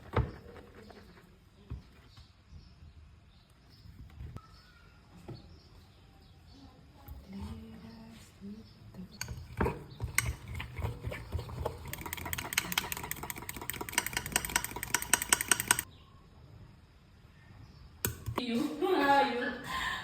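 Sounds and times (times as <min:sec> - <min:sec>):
batter mixing in bowl: 0:09.2 - 0:15.8.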